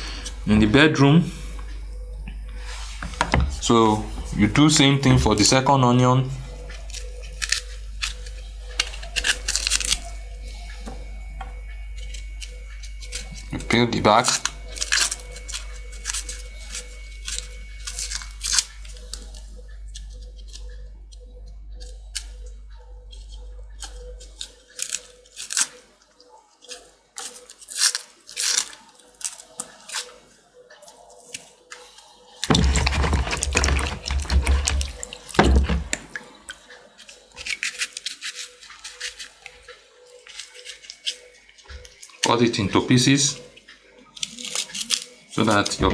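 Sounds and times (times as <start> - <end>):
onion skin crackling as peeled: 0.0 - 25.8, 26.6 - 30.2, 44.1 - 45.9
running water: 32.5 - 37.3.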